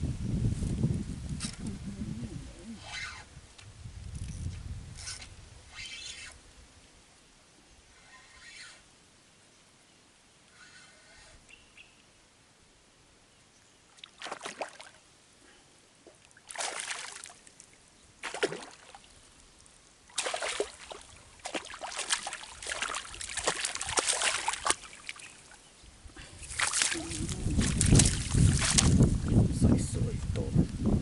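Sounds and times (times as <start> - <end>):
water splashing and sloshing: 13.9 - 15.0, 16.0 - 25.7, 26.3 - 29.4.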